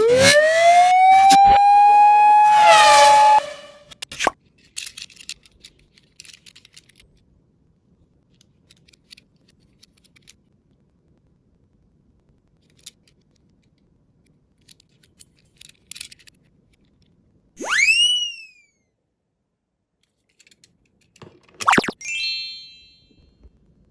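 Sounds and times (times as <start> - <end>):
rising whistle sound effect: 0.0 - 3.9, 17.6 - 18.6, 21.6 - 23.1
toy car wheels clicking and rattling: 4.6 - 7.1, 14.7 - 16.4.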